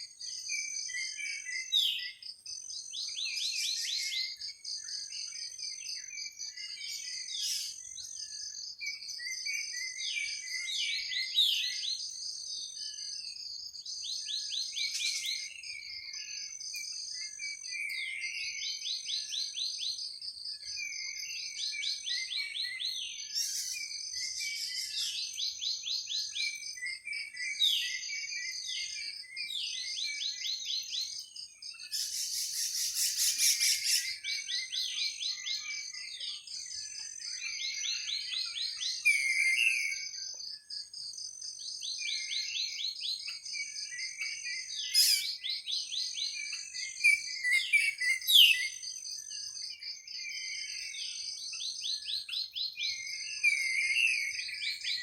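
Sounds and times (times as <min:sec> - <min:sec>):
birds chirping: 0:30.6 - 0:55.0.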